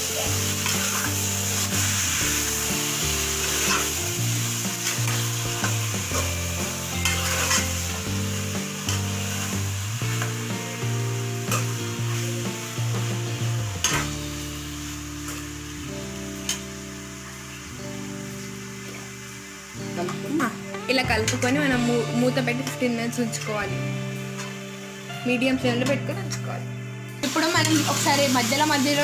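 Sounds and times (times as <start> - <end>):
chicken sizzling in hot oil: 0.0 - 29.0
soft background music: 0.0 - 29.0
spatula scraping a pan: 0.1 - 2.6, 3.4 - 7.9.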